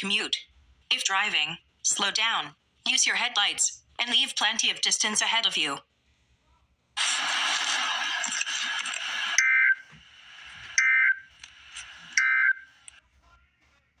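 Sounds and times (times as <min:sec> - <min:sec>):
static hiss burst: 0:07.0 - 0:09.4
two-tone electronic data chirps: 0:08.2 - 0:09.9, 0:10.7 - 0:12.8.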